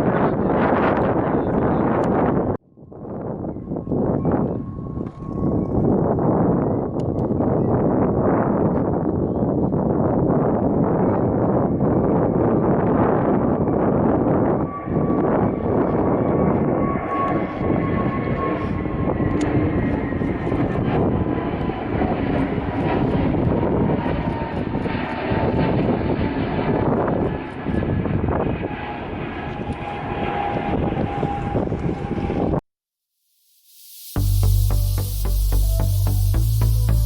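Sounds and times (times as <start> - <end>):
high engine whine: 33.6 - 37.0
jet engines running: 33.7 - 37.0.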